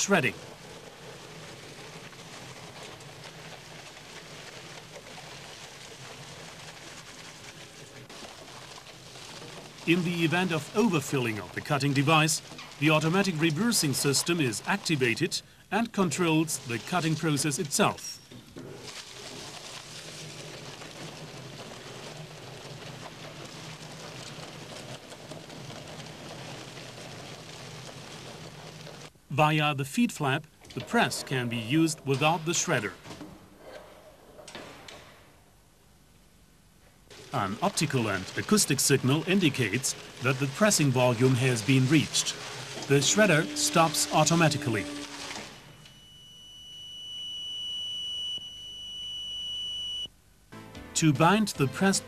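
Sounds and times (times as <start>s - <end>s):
faint paper crackle: 0.0s - 29.2s, 36.8s - 46.1s
shredder humming: 37.1s - 46.1s.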